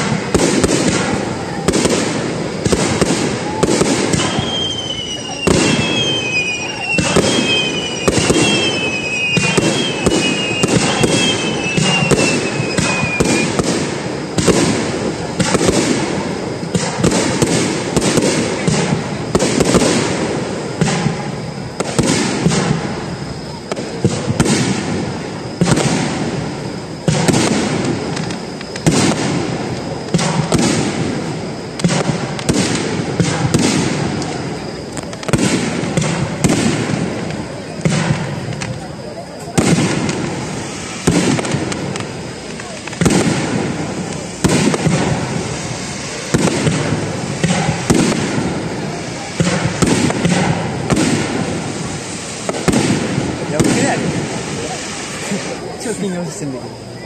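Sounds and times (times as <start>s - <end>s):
falling firework whistles: 0.0s - 57.0s
fireworks bangs and crackling: 0.0s - 57.0s.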